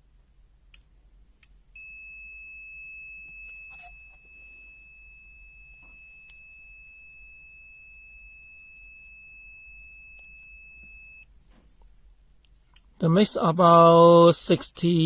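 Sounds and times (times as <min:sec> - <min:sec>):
multimeter continuity beep: 0:01.8 - 0:11.3.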